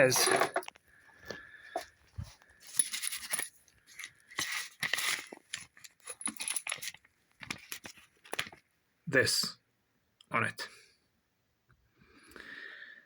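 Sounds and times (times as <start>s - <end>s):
metal bearing clinking and scraping: 0.0s - 0.7s, 2.6s - 7.9s.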